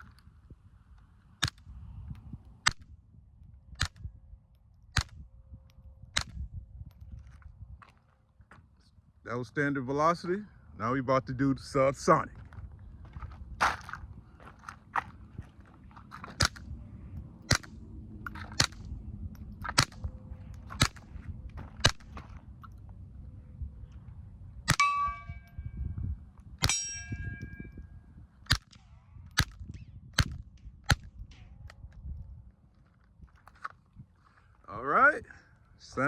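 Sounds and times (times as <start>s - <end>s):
suppressed rifle shots: 17.5s - 18.9s, 19.7s - 20.0s, 20.7s - 21.1s, 21.8s - 22.2s, 24.7s - 25.4s
ringing metallic tone: 24.7s - 26.0s, 26.6s - 28.0s.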